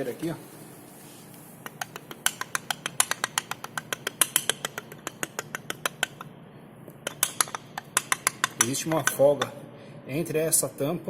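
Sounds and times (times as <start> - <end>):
plastic wheel cap clicking: 1.7 - 6.3, 7.1 - 9.2.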